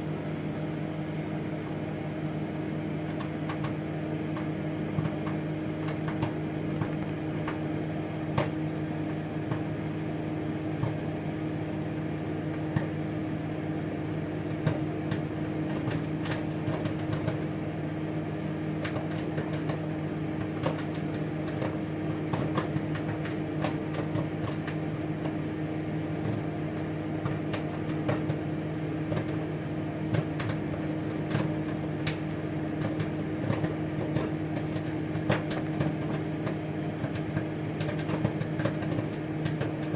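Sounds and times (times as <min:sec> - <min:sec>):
microwave oven humming: 0:00.0 - 0:39.9
popcorn popping: 0:02.8 - 0:39.9.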